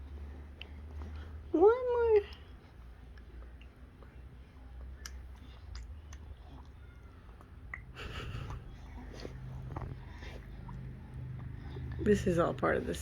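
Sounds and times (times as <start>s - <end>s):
baby smacking and sucking: 2.4s - 12.0s.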